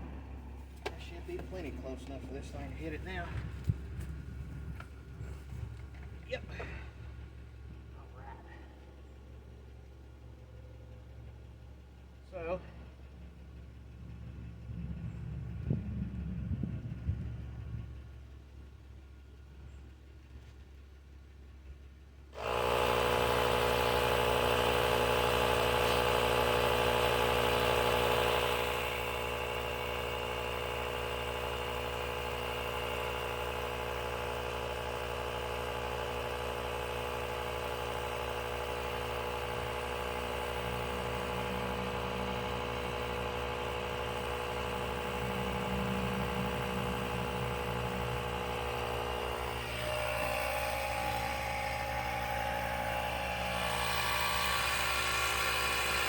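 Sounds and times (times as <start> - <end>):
motor humming: 0.0 - 9.2, 22.4 - 56.0.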